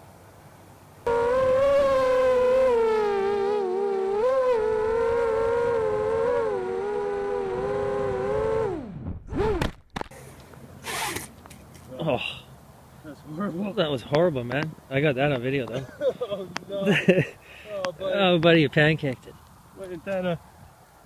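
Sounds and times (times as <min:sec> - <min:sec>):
quadcopter motors whining: 0:01.1 - 0:09.7.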